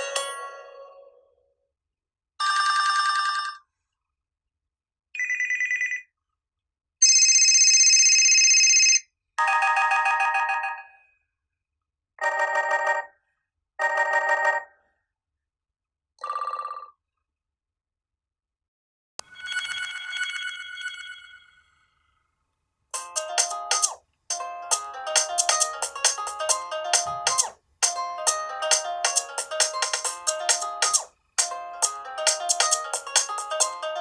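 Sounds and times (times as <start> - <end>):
ringtone melody: 0.0 - 1.2, 23.0 - 34.0.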